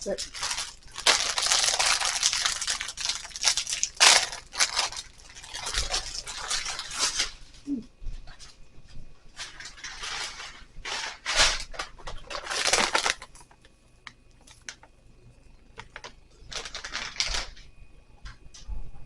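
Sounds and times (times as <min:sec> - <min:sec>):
packaging rustling and crinkling: 0:00.0 - 0:07.6, 0:09.3 - 0:15.0, 0:15.8 - 0:17.6.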